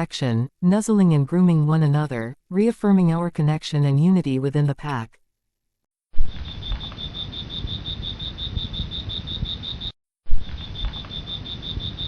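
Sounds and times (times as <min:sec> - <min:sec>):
crickets chirping: 0:06.3 - 0:12.0.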